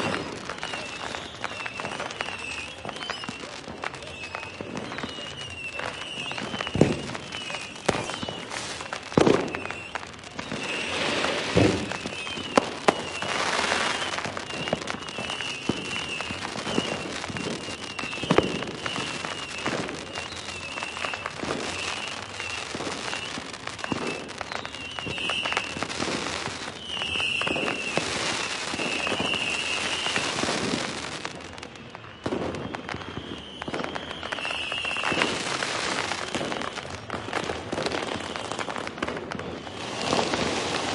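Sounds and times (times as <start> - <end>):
fireworks crackling and popping: 0.0 - 40.9
loud firework bangs: 0.0 - 40.9.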